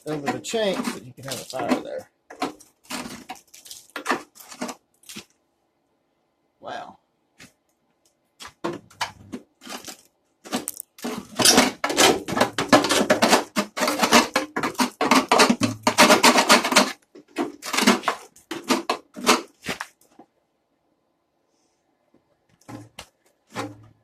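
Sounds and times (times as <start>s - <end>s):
tool scraping sheet metal: 11.0s - 19.8s.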